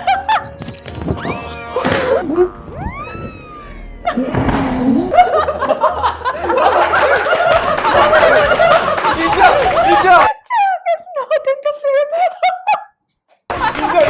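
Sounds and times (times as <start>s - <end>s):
people laughing together: 0.0s - 0.6s, 5.1s - 10.4s, 13.5s - 14.0s
sliding tones: 0.2s - 5.2s.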